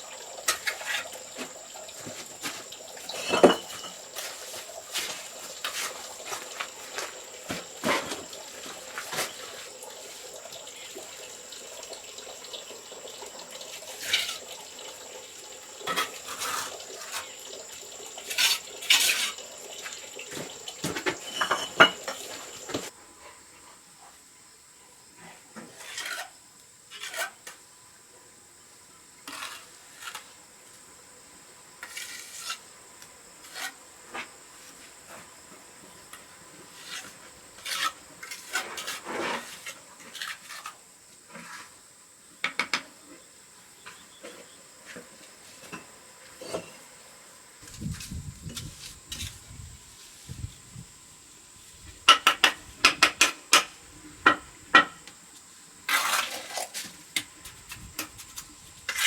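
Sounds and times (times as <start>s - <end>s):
hard object scraping and clinking: 20.9s - 22.9s.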